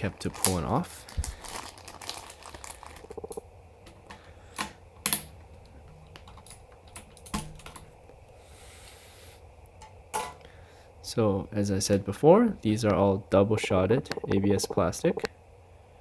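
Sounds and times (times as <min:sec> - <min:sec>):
keycaps clicking off keyboard: 0:03.1 - 0:08.0.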